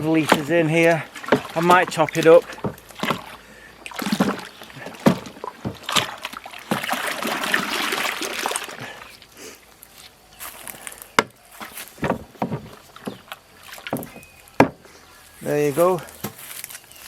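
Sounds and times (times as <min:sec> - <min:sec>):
liquid sloshing in a barrel: 0:00.0 - 0:09.4, 0:10.4 - 0:15.4
sharp knocks: 0:01.2 - 0:03.4, 0:04.0 - 0:06.1, 0:12.0 - 0:13.2, 0:13.9 - 0:14.8.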